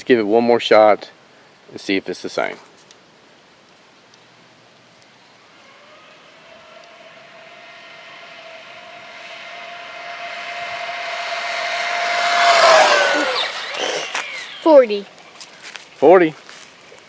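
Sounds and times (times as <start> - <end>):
electric motor whine: 5.3 - 16.0.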